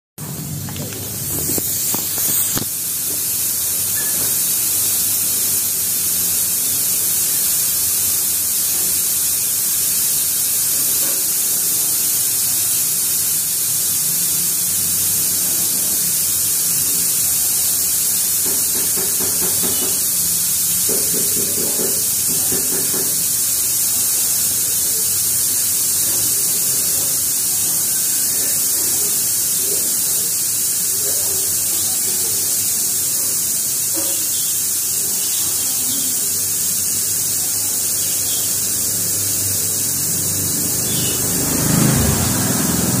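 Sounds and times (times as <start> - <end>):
air hissing from tyre: 0.2 - 43.0.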